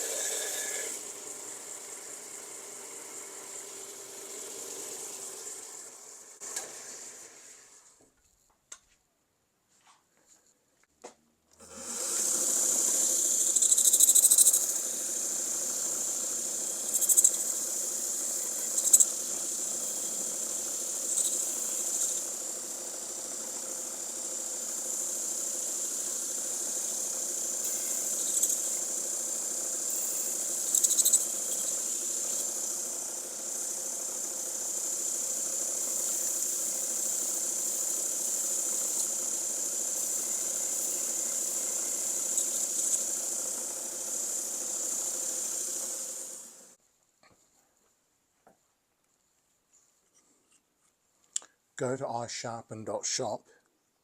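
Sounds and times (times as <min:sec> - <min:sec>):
knife grinding on wheel: 0:00.0 - 0:01.1, 0:11.8 - 0:46.1
motor hum: 0:00.0 - 0:08.0, 0:11.6 - 0:46.8.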